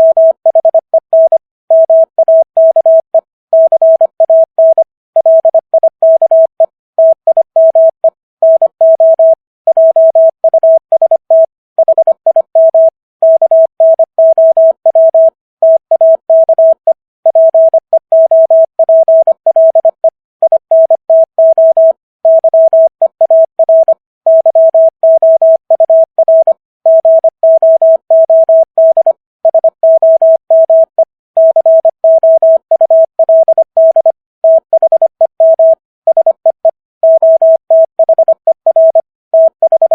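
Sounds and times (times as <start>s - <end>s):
morse code beeps: 0.0s - 39.9s.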